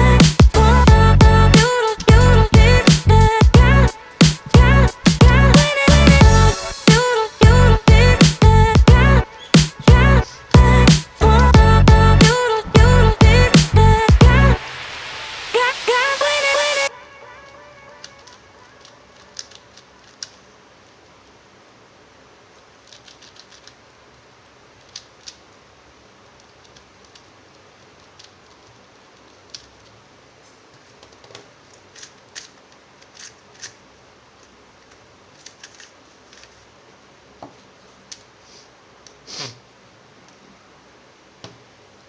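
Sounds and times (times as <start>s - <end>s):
steady low hiss: 0.0s - 42.0s
plastic puzzle cubes clicking: 18.8s - 21.0s, 22.8s - 23.9s, 24.7s - 25.6s, 26.3s - 30.0s, 30.9s - 33.8s, 34.4s - 36.7s, 38.0s - 38.3s.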